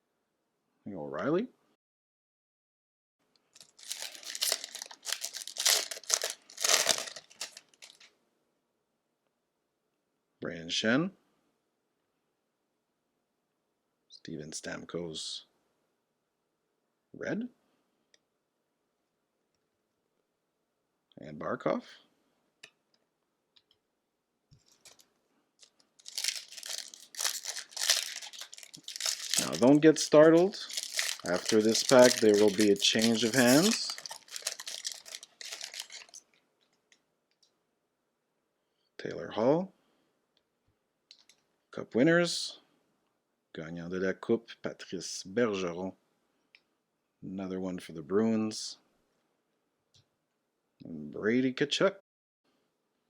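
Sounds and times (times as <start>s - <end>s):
foil wrapper crinkling: 3.5s - 8.1s, 24.7s - 25.0s, 25.6s - 36.2s.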